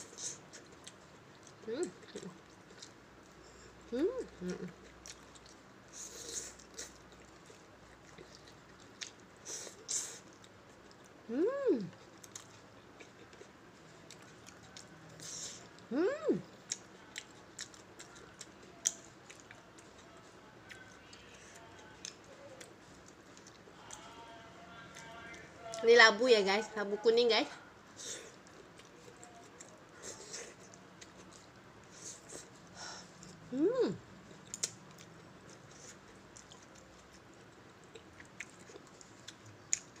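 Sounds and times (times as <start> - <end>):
person chewing: 0.0 - 11.2, 11.9 - 15.9, 16.6 - 24.3, 27.9 - 33.5, 34.1 - 40.0
wet chewing mouth clicks: 34.3 - 37.2.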